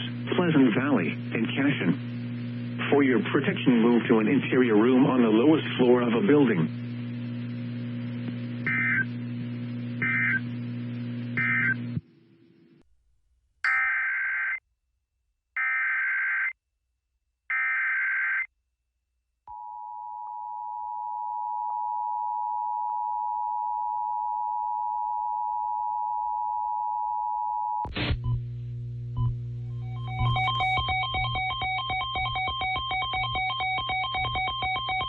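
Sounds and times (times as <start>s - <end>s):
data header bursts: 8.6s - 9.1s, 10.0s - 10.4s, 29.9s - 35.0s
two-tone attention signal: 29.8s - 35.0s.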